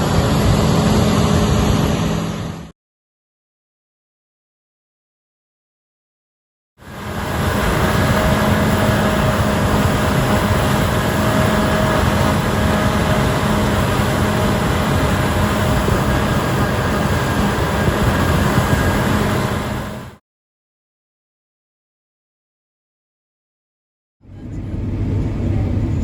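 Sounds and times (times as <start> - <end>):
diesel engine running steadily: 0.0 - 2.7, 6.8 - 20.2, 24.2 - 26.0.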